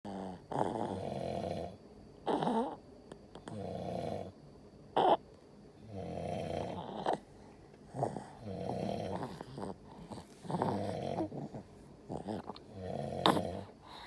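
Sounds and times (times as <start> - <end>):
baby snoring heavily: 0.1 - 2.8, 5.0 - 5.2, 5.9 - 7.2, 7.9 - 14.0.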